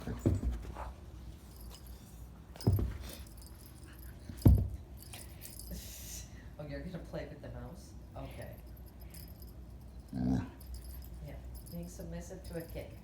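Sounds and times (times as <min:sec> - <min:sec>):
dog collar tags jingling: 0:01.4 - 0:05.9, 0:08.2 - 0:13.0.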